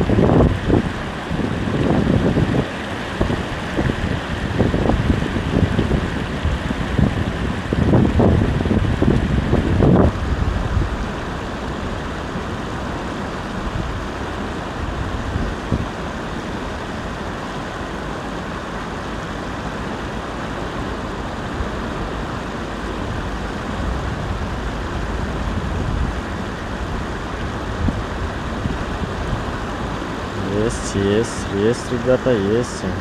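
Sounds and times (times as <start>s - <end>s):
wind on microphone: 0.0s - 12.0s, 23.0s - 31.8s
low rumbling gusts: 0.0s - 18.8s, 19.5s - 33.0s.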